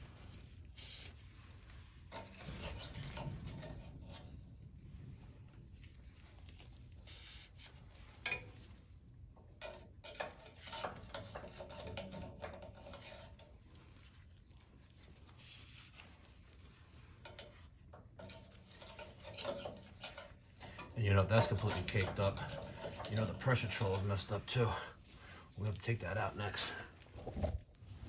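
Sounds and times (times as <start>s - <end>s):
metallic clinks of tools and fittings: 8.2s - 8.7s.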